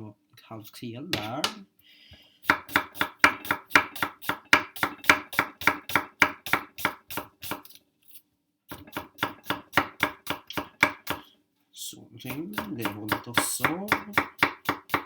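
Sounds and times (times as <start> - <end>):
knife chopping onion on board: 2.4 - 7.7, 8.7 - 11.3, 12.3 - 15.0.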